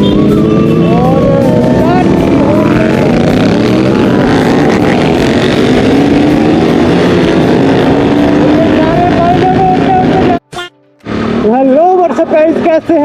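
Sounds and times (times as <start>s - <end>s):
motorcycle engine running: 0.0s - 10.4s
road and wind noise: 0.0s - 13.0s.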